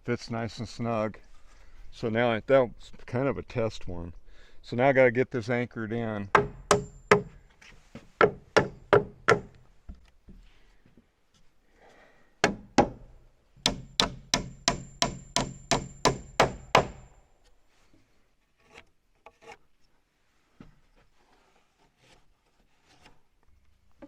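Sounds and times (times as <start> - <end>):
hammer striking nails into wood: 6.4 - 7.4, 8.2 - 9.6, 12.4 - 17.2.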